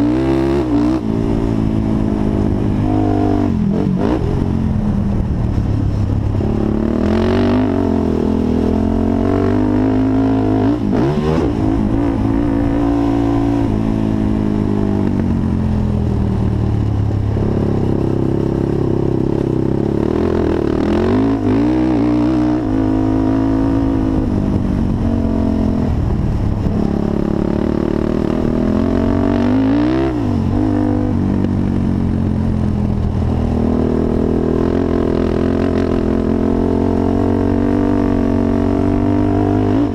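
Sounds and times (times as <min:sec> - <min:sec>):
quad engine revving: 0:18.5 - 0:25.8, 0:33.7 - 0:39.9.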